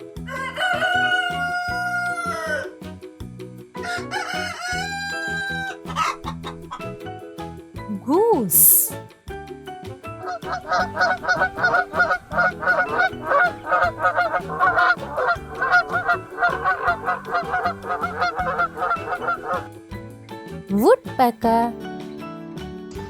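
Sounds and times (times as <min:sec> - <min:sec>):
geese honking: 0:10.2 - 0:19.7.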